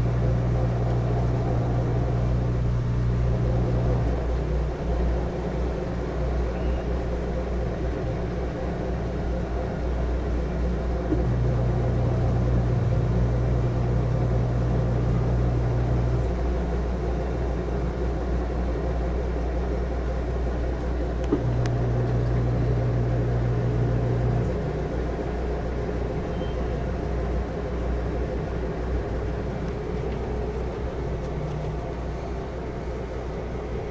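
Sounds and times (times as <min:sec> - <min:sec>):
washing machine running: 0:00.0 - 0:33.9
click: 0:21.2 - 0:22.4.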